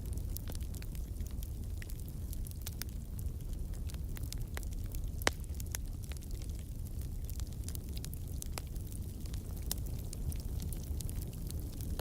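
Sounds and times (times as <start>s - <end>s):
low rumble of burning: 0.0s - 12.0s
wood fire crackling: 0.0s - 12.0s.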